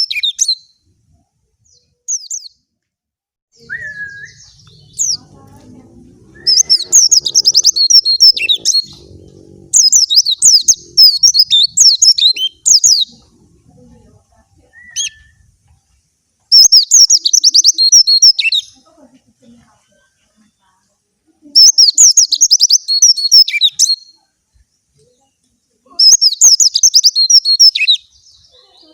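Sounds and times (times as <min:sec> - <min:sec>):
bird twittering: 0:03.6 - 0:13.5, 0:16.5 - 0:18.8, 0:21.6 - 0:24.2, 0:26.0 - 0:28.5.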